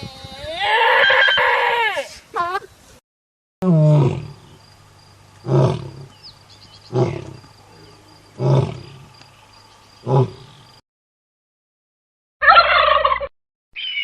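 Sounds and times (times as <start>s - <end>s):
large animal roaring: 3.6s - 4.6s, 5.4s - 6.1s, 6.9s - 9.2s, 10.0s - 10.8s.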